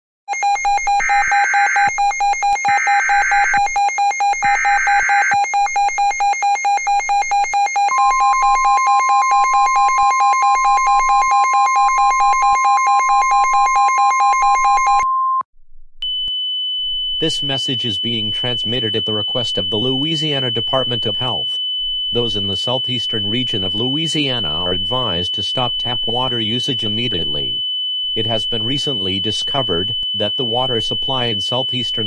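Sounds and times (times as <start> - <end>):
steady warning tone: 0.3 - 15.0, 16.0 - 32.0
pulsing alarm beep: 0.3 - 15.4, 16.0 - 32.0
high steady tone: 16.0 - 32.0
data header screech: 28.2 - 32.0.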